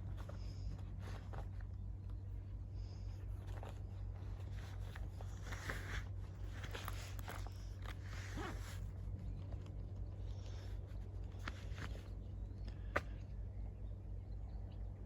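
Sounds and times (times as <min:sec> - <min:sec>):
small clicks and rustles: 0:00.0 - 0:13.4
steady low rumble: 0:00.0 - 0:15.0.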